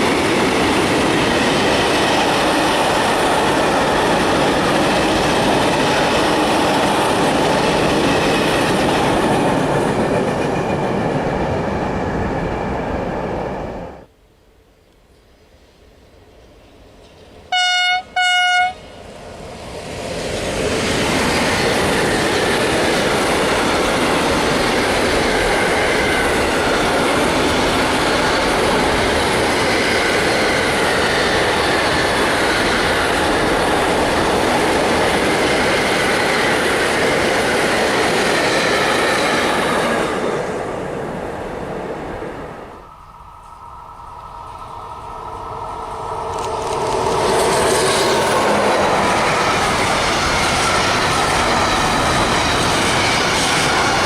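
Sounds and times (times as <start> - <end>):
freight train rumbling past: 0.0 - 14.1, 15.4 - 54.0
locomotive horn blasts: 17.5 - 18.9.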